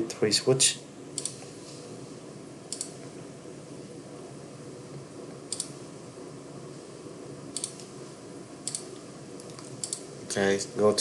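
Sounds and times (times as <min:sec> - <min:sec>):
computer mouse clicking: 0:01.2 - 0:01.4, 0:02.7 - 0:03.0, 0:05.5 - 0:05.8, 0:07.5 - 0:07.9, 0:08.6 - 0:10.1.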